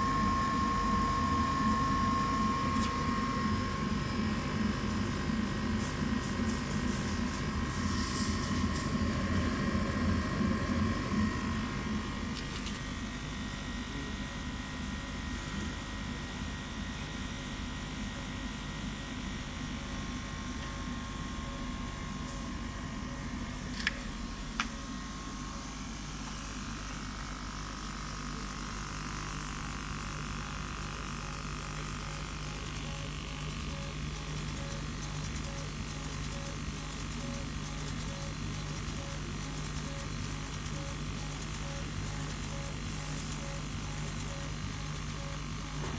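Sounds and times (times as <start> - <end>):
high whine: 0.0 - 14.4
laser cutting machine humming: 0.0 - 45.9.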